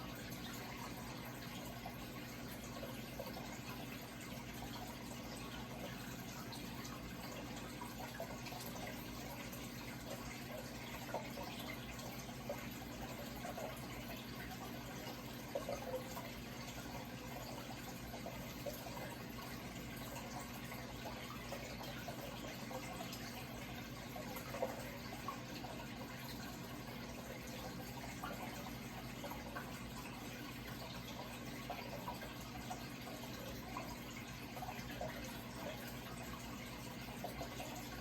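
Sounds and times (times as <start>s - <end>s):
water trickling and splashing: 0.0s - 38.0s.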